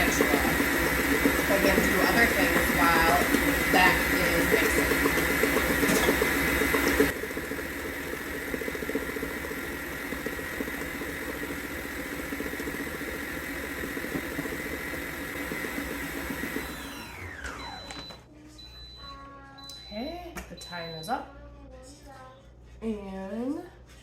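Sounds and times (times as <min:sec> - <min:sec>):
stand mixer beating batter: 0:00.0 - 0:18.2.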